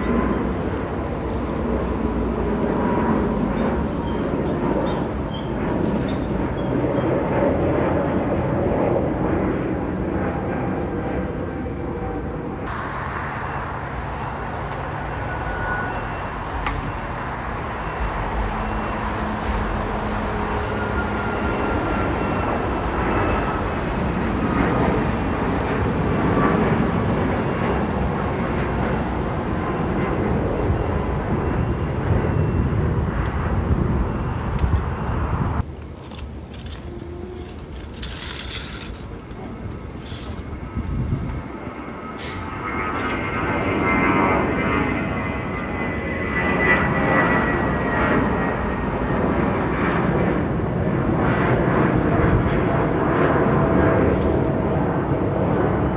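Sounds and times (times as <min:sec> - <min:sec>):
jet engine rumble: 0:00.0 - 0:55.9
faint gliding whine: 0:11.4 - 0:24.4, 0:27.2 - 0:49.8.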